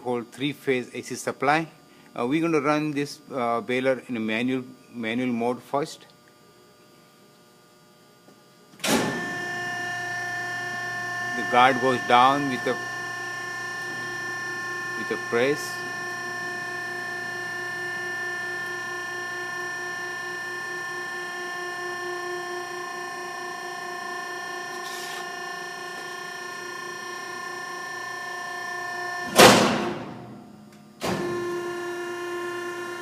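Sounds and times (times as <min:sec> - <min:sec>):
hydraulic unit whine: 0:08.7 - 0:33.0.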